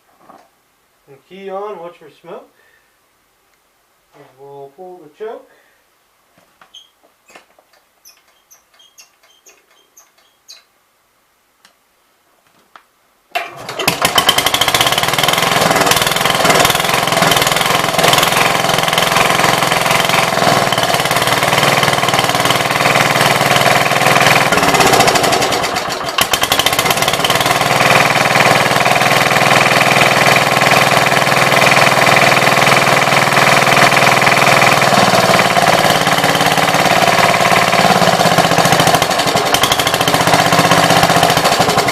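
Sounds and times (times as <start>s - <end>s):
engine running loudly: 14.0s - 41.9s.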